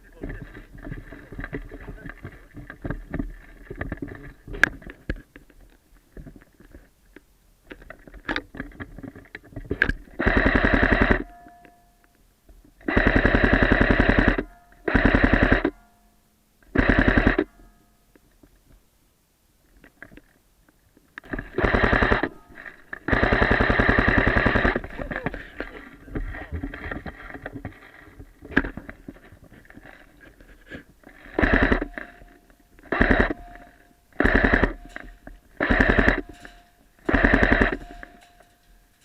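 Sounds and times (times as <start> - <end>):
airsoft gun firing bursts: 10.2 - 11.3, 12.8 - 15.7, 16.7 - 17.5, 21.3 - 22.4, 23.1 - 25.1, 31.2 - 38.3.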